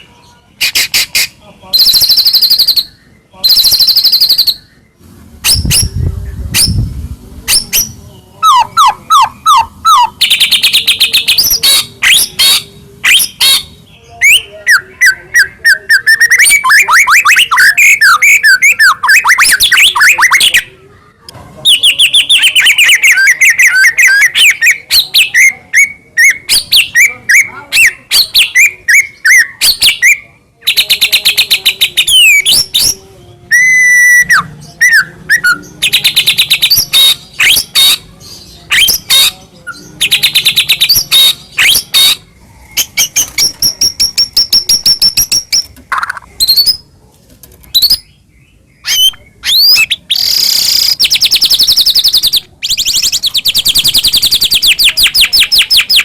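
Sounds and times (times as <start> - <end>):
bird singing whistled trills: 32.0 - 38.0.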